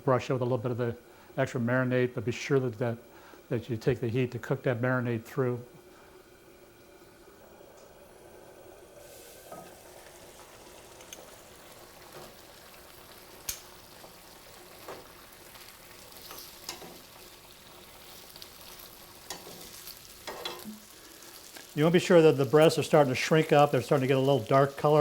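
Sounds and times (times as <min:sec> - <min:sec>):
chicken sizzling in a skillet: 0:08.9 - 0:25.0.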